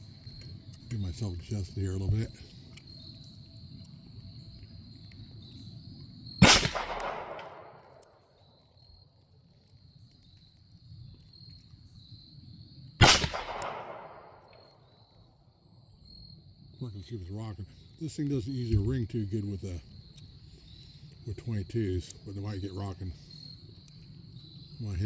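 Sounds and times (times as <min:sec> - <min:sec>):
crickets chirring: 0:00.0 - 0:25.0
pistol shots with echo: 0:06.4 - 0:08.1, 0:13.0 - 0:14.5.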